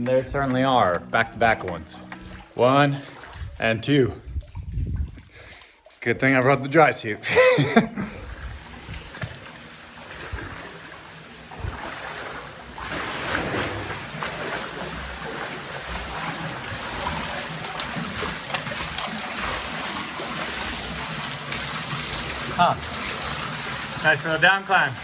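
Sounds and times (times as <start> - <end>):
creek water rushing and splashing: 8.0 - 25.0.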